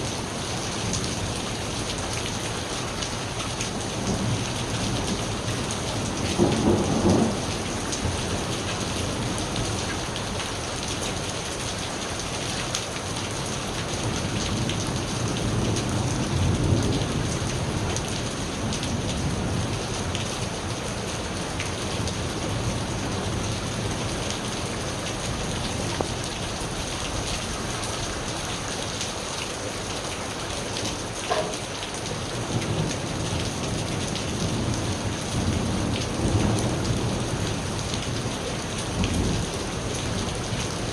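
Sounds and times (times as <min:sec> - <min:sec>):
heavy rain: 0:00.0 - 0:40.9
low thunder rumbles: 0:03.9 - 0:09.8.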